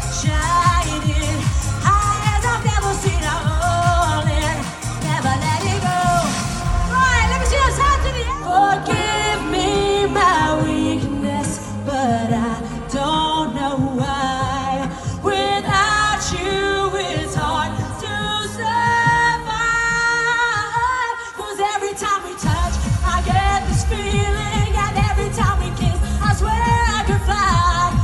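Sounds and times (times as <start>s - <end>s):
heavy kick-drum beat: 0.0s - 15.0s, 22.4s - 28.0s
dance-pop music with singing: 0.0s - 28.0s.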